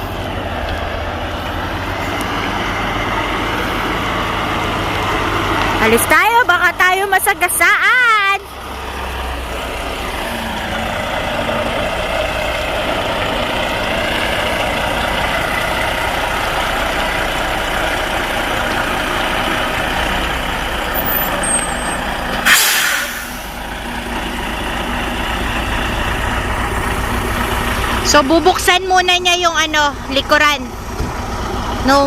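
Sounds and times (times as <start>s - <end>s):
diesel truck engine running: 0.0s - 32.0s
air brake hiss: 22.4s - 23.6s.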